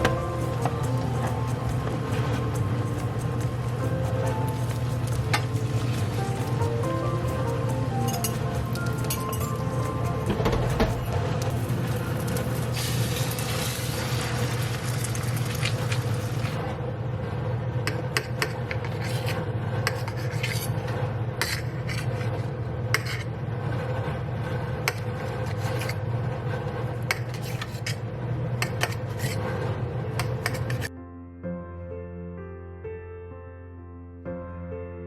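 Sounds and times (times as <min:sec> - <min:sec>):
utensil scraping in a pan: 0:00.0 - 0:10.4, 0:18.2 - 0:23.3, 0:24.8 - 0:28.0, 0:28.6 - 0:29.6, 0:30.2 - 0:30.9
steady low hum: 0:00.0 - 0:30.9
metal clinking on cookware: 0:08.0 - 0:09.9.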